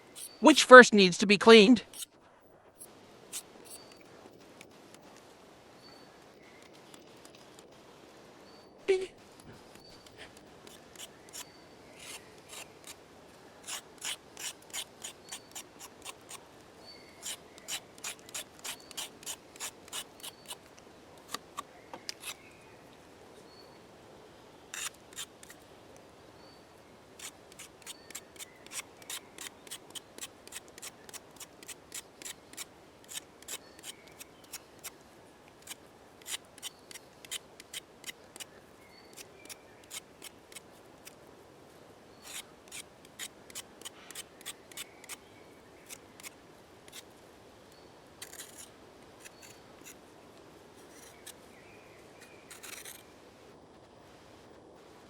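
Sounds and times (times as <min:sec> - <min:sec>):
knife scraping carrot skin: 0:00.0 - 0:00.4, 0:10.6 - 0:13.0, 0:13.6 - 0:16.4, 0:17.2 - 0:20.7, 0:21.3 - 0:22.4, 0:24.7 - 0:25.6, 0:27.2 - 0:35.0, 0:35.6 - 0:41.2, 0:42.1 - 0:45.2, 0:45.8 - 0:47.0, 0:48.2 - 0:50.0, 0:50.8 - 0:51.4, 0:52.2 - 0:53.0.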